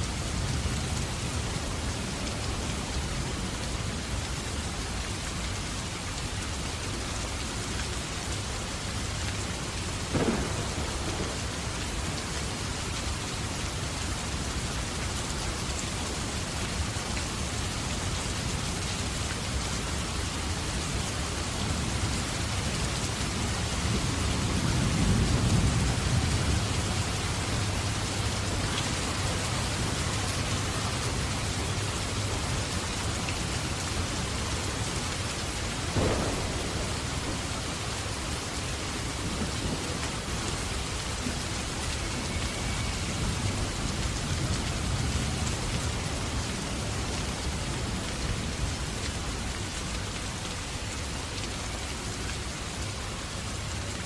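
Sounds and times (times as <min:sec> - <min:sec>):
steady rain: 0:00.0 - 0:54.0
low rumble of thunder: 0:10.0 - 0:12.8, 0:23.2 - 0:27.4, 0:35.8 - 0:41.2
sharp thunder crack: 0:10.1 - 0:11.8, 0:35.9 - 0:37.7.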